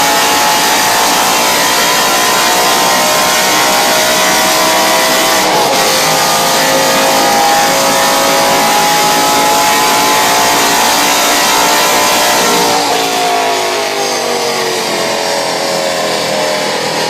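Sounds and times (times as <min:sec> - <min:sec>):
car engine revving high: 0:00.0 - 0:17.0.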